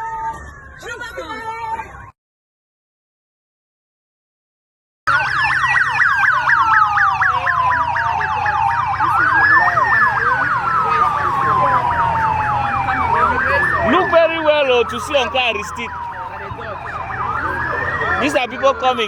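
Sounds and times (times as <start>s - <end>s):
emergency sirens wailing and yelping: 0.0s - 2.1s, 5.1s - 19.0s
low engine hum: 5.1s - 18.6s.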